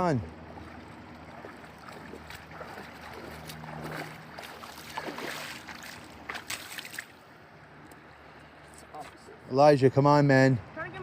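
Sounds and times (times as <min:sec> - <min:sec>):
river water rushing: 0:00.0 - 0:08.3.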